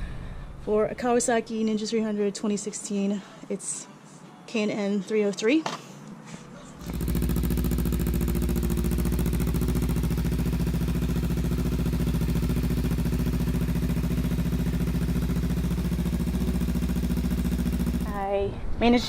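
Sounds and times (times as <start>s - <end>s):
motorcycle engine idling: 6.8s - 18.2s.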